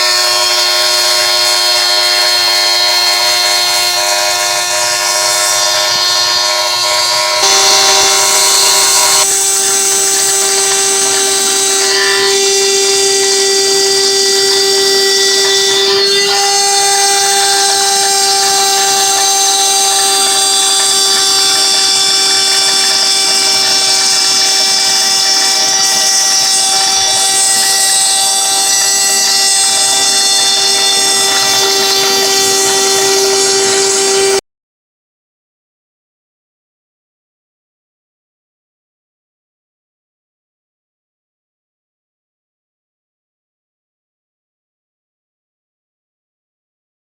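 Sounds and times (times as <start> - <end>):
router spindle whining: 0.0 - 34.4.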